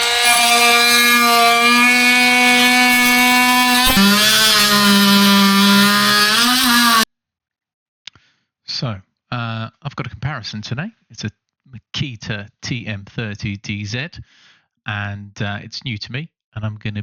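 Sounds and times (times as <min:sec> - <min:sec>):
oscillating multi-tool buzzing: 0:00.0 - 0:07.1.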